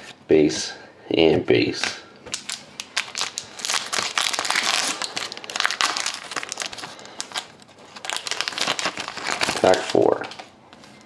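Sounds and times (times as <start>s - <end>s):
card pack wrapper crinkling: 2.3s - 11.0s.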